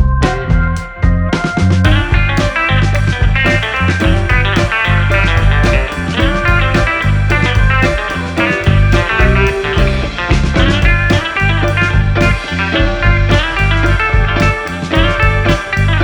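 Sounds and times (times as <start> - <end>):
guitar-led rock music with drums: 0.0 - 16.0.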